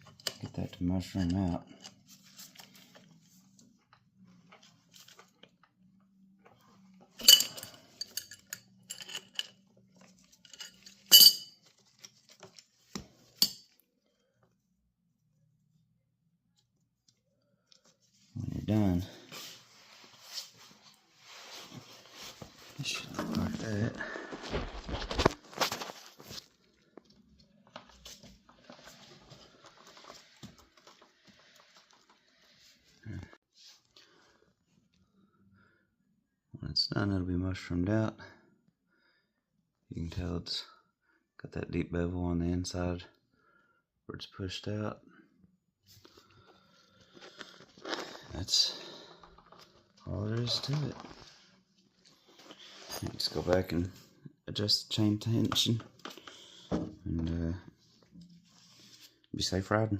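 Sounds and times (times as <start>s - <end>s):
steel tools clinking: 7.2s - 9.6s, 10.3s - 11.7s.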